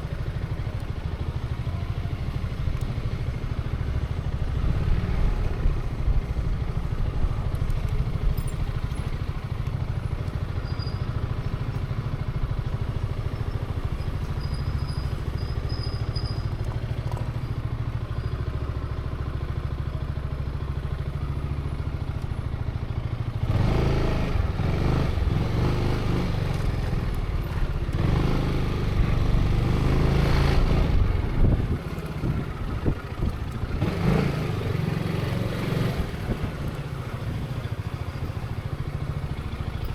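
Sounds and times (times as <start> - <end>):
scooter engine running: 0.0 - 39.9.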